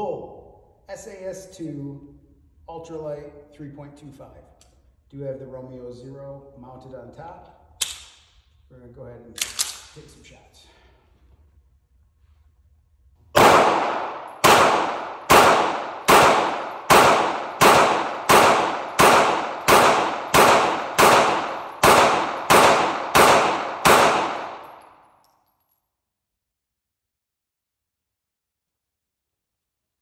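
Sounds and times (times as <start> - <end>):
pistol shots echoing: 13.4 - 25.0.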